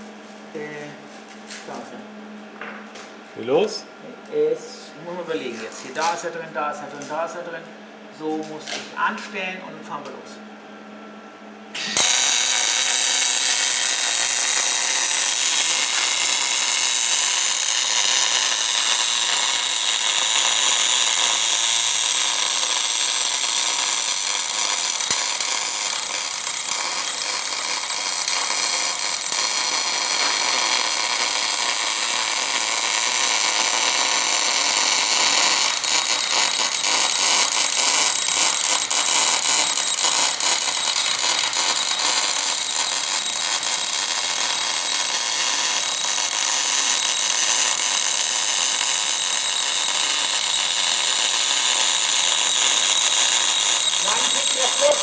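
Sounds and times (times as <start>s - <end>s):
welding arc hiss and crackle: 4.3s - 7.6s, 8.2s - 10.2s, 11.7s - 55.0s.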